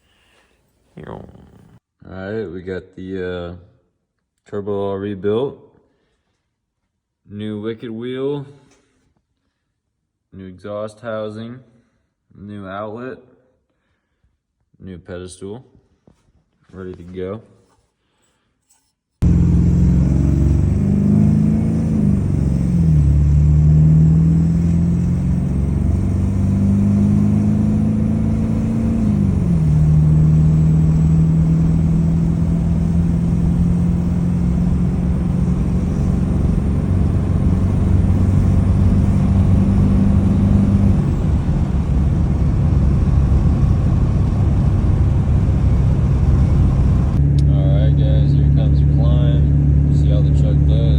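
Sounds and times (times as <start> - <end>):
diesel truck engine: 19.2 - 50.9.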